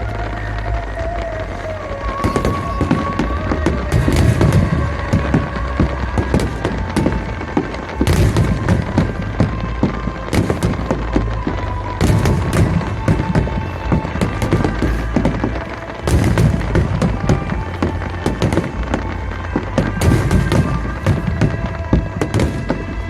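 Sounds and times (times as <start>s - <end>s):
fireworks booming and crackling: 0.0s - 23.0s
music: 0.0s - 23.0s.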